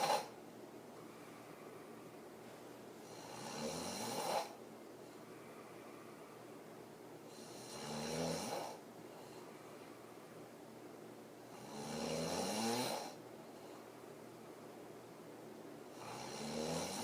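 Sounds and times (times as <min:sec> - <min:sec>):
woman snoring hard: 0:00.0 - 0:00.3, 0:03.0 - 0:04.6, 0:07.3 - 0:08.8, 0:11.5 - 0:13.2, 0:15.9 - 0:17.0.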